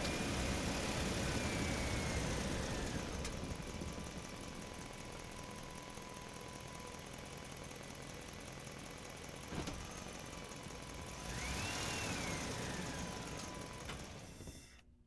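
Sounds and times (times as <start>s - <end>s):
squeal: 14.2s - 14.8s.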